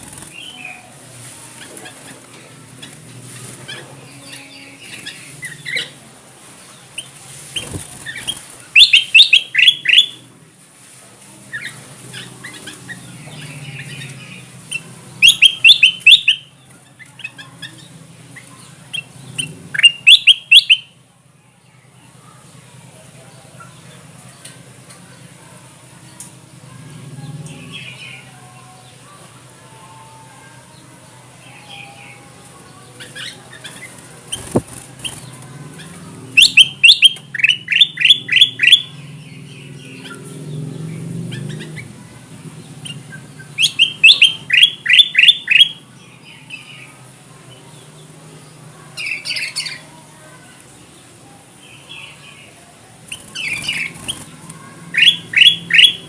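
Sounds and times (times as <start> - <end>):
soft bird calls: 6.8 - 10.2, 51.8 - 56.0
bird chattering calls: 7.6 - 10.2, 33.0 - 39.0, 53.1 - 56.0.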